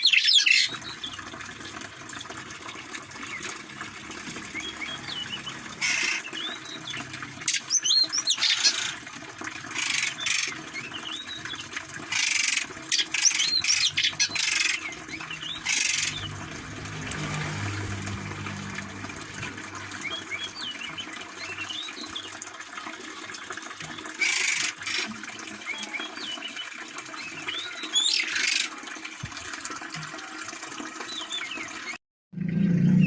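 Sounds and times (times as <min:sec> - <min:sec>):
birds chirping and whistling: 0:00.0 - 0:01.2, 0:04.4 - 0:09.0, 0:09.8 - 0:16.4, 0:19.8 - 0:22.4, 0:25.6 - 0:28.7
harsh hissing bird calls: 0:05.1 - 0:06.4, 0:07.5 - 0:09.0.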